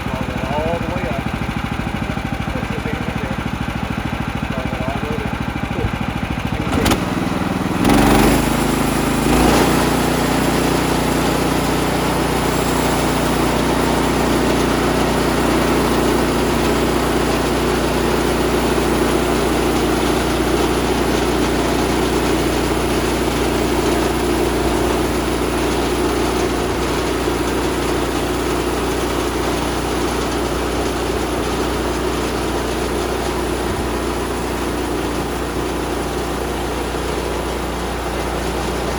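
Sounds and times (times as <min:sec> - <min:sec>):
gas engine running under load: 0:00.0 - 0:38.9
saw blade cutting log: 0:06.7 - 0:38.9.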